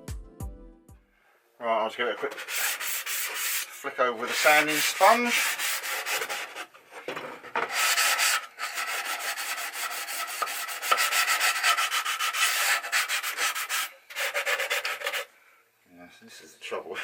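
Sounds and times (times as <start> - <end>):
sanding sponge rubbing wood: 2.2 - 6.7, 7.6 - 15.3.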